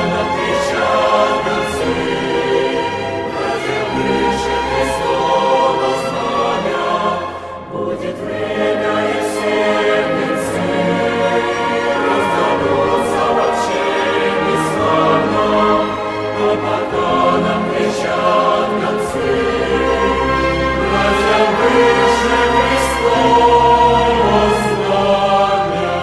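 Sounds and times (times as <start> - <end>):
choir singing: 0.0 - 26.0.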